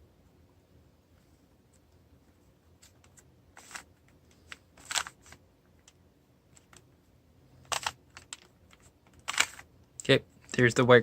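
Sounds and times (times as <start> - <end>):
puzzle cube clicking as twisted: 7.6 - 10.0.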